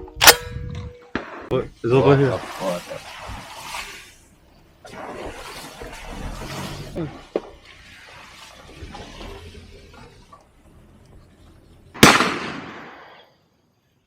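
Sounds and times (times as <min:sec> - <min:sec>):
shotgun shot: 0:00.2 - 0:01.5, 0:12.0 - 0:13.2.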